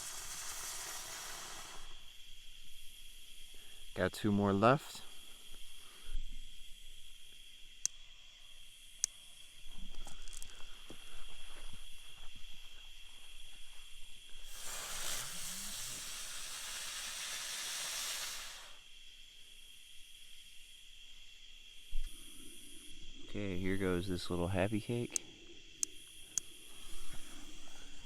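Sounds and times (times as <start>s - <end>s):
firework spinning with loud hiss: 0.0s - 2.2s, 14.3s - 18.9s
small clicks and rustles: 9.0s - 11.4s.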